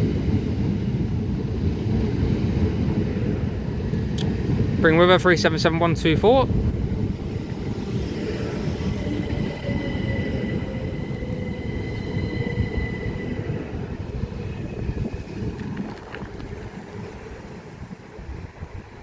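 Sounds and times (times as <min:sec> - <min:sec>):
train wheels rumbling on rails: 0:00.0 - 0:19.0
steady high whine: 0:04.2 - 0:18.0.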